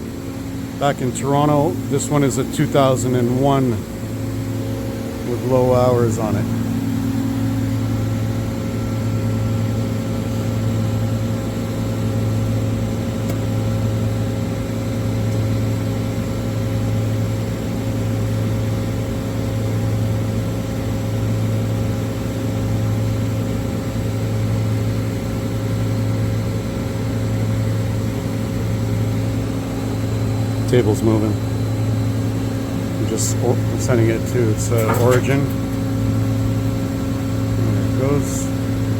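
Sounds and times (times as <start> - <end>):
hydraulic pump humming: 0.0 - 15.8, 25.6 - 38.9.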